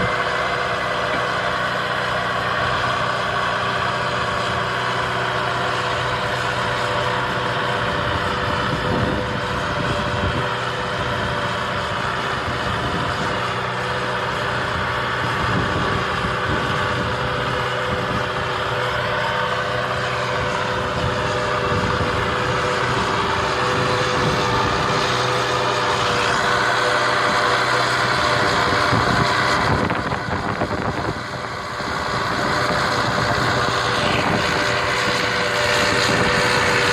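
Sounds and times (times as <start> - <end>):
tractor engine running: 0.0 - 36.9.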